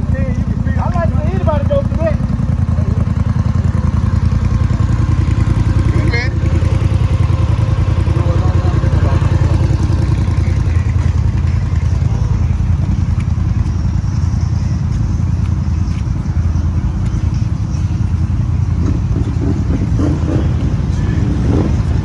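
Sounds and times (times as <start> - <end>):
atv engine running: 0.0 - 22.0.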